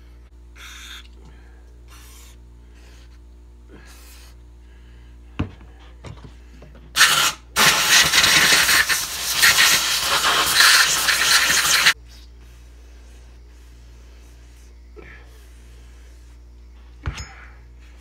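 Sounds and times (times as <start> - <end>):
aerosol can spraying: 7.0 - 12.0.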